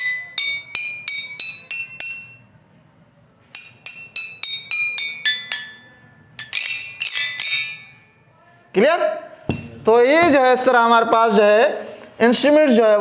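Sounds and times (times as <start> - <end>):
xylophone notes: 0.0 - 2.5, 3.5 - 8.2.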